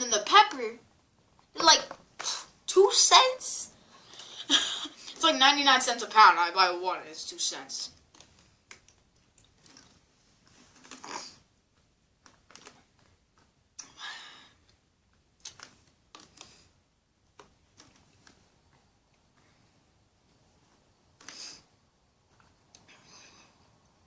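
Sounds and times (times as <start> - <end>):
faint clicks and handling noises: 8.0 - 11.0, 11.7 - 13.6, 14.6 - 21.4.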